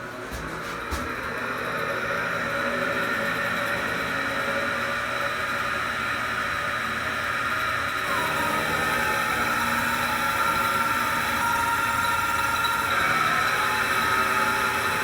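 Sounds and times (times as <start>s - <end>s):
ventilation fan whirring: 0.0s - 15.0s
high squealing whine: 8.0s - 15.0s.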